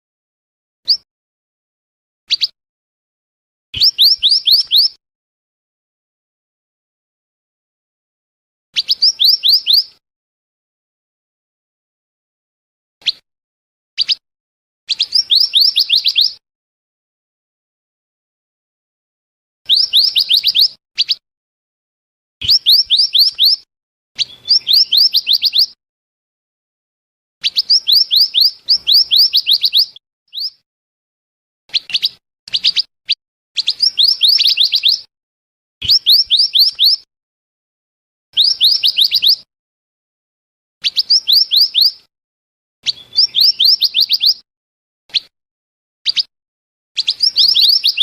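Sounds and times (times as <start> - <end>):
songbird high chirps: 0.9 - 1.1, 2.3 - 2.6, 3.8 - 5.0, 8.8 - 10.0, 14.0 - 14.2, 14.9 - 16.4, 19.7 - 21.2, 22.4 - 25.8, 27.4 - 30.6, 31.7 - 35.1, 35.8 - 37.1, 38.4 - 39.5, 40.8 - 42.1, 42.8 - 44.4, 46.1 - 46.3, 47.0 - 48.0.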